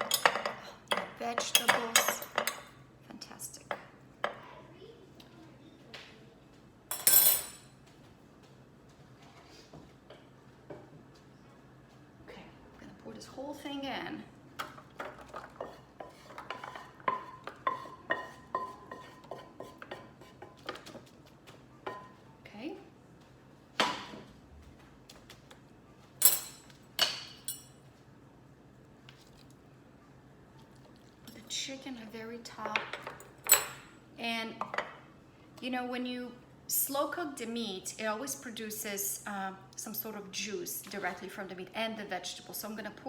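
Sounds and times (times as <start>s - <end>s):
dishes and utensils clinking: 0.0s - 2.8s, 6.9s - 7.7s, 26.2s - 27.8s
kitchenware clanking: 0.0s - 2.8s, 6.9s - 7.7s, 26.2s - 27.8s, 32.6s - 33.9s.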